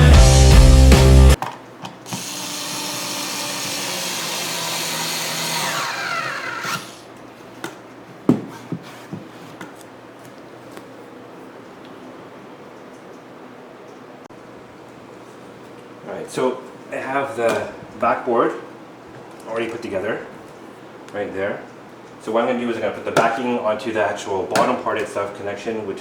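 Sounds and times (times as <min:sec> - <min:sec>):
rock music: 0:00.0 - 0:01.4
power drill running: 0:02.1 - 0:07.1.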